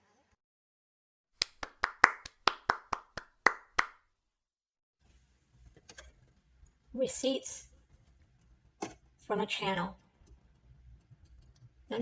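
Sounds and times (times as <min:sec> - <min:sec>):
hand clapping: 0:01.4 - 0:04.0.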